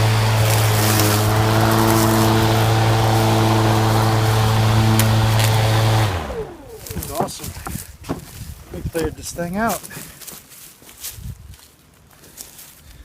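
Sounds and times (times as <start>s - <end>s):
lawn mower motor humming: 0.0s - 8.4s.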